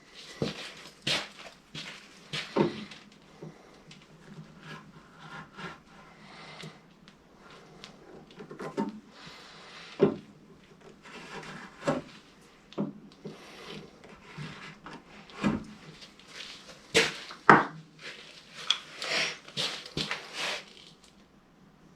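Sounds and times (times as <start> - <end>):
rubbing and scraping on wood: 0.0 - 6.8, 7.4 - 21.0
wood-on-wood knocks: 17.5 - 17.8.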